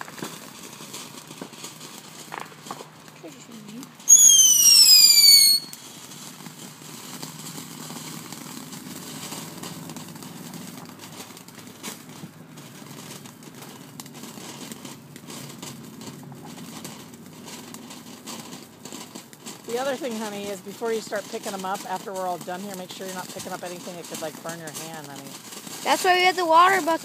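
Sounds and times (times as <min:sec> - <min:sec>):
faint firework crackling: 0:00.0 - 0:27.0
firework whistle falling in pitch: 0:04.1 - 0:05.8.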